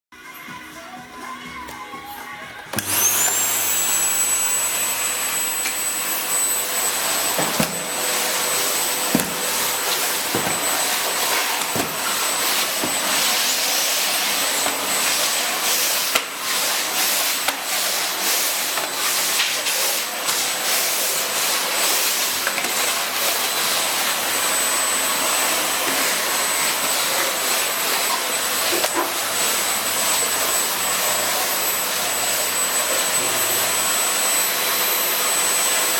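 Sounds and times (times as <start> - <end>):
vacuum cleaner motor whine: 2.7 - 35.9.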